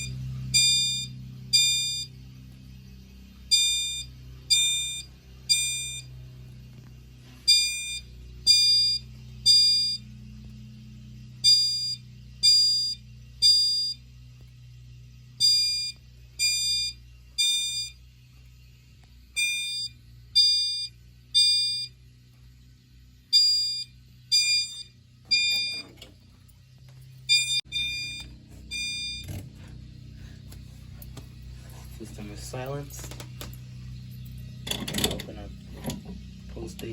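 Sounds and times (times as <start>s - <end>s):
fire alarm high tones: 0.0s - 10.5s, 11.2s - 14.1s, 15.3s - 18.1s, 19.3s - 22.0s, 23.3s - 26.1s, 27.2s - 30.4s
low steady hum: 0.0s - 36.9s.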